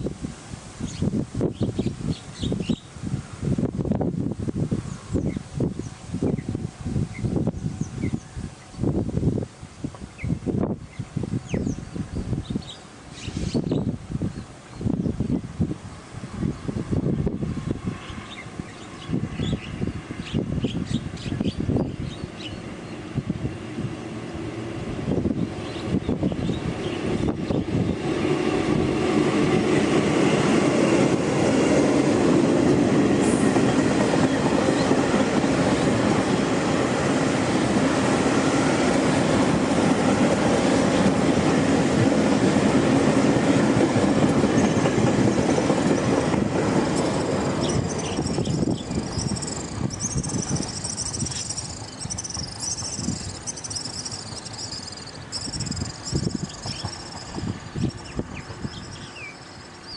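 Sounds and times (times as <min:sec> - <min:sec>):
train wheels rumbling on rails: 0:00.0 - 0:59.9
high rapid chirping: 0:47.1 - 0:57.5.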